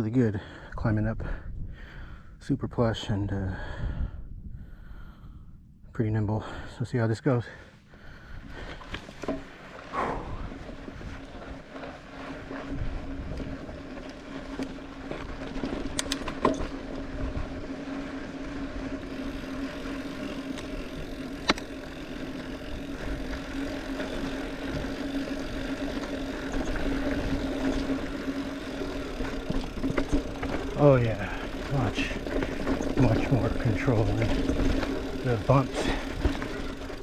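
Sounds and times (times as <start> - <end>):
tyre and trail rumble: 7.4 - 37.0
steady buzzing hum: 7.8 - 37.0
bike clicks and knocks: 8.6 - 9.7, 11.7 - 17.3, 17.9 - 37.0.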